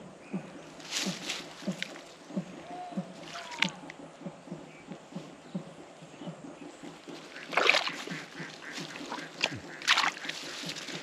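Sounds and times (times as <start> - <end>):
fast low pulses: 0.0 - 11.0
water splashing: 7.2 - 11.0.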